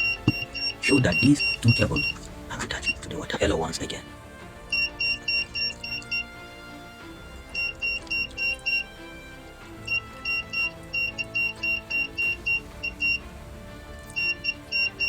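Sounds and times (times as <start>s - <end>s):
buzzer beeping: 0.0s - 2.2s, 4.7s - 6.4s, 7.5s - 9.0s, 9.7s - 13.3s, 14.2s - 15.0s
background music: 0.0s - 15.0s.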